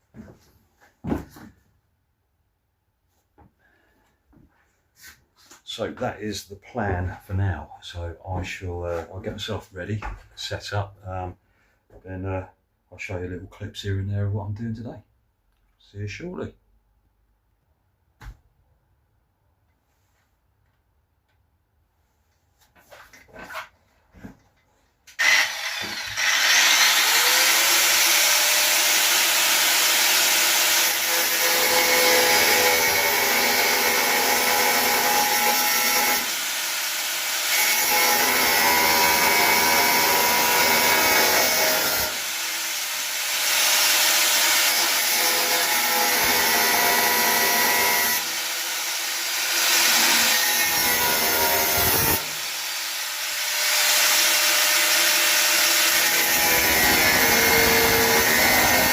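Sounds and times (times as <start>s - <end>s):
drill wire brush grinding metal: 25.2s - 58.9s.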